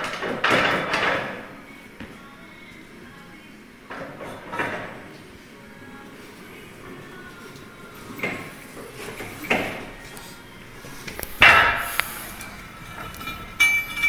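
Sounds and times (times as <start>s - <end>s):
heavy metal parts clanking: 11.3s - 14.0s
ringing metal clink: 13.0s - 14.0s.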